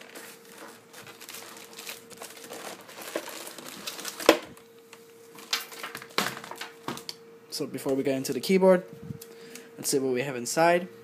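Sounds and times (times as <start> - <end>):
packaging crinkling and rustling: 0.0 - 7.1.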